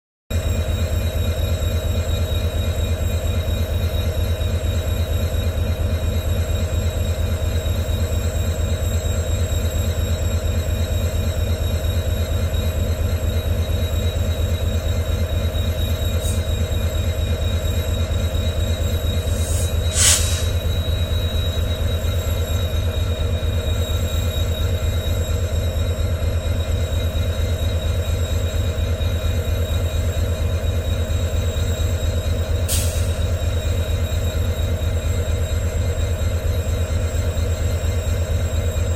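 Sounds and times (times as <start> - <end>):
diesel locomotive engine idling: 0.3 - 38.9
short burst of noise: 19.4 - 20.6.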